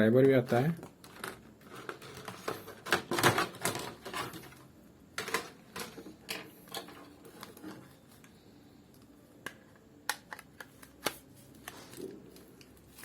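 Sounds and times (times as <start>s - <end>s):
clicks and rattles of plastic parts: 0.2s - 4.6s, 5.2s - 7.8s.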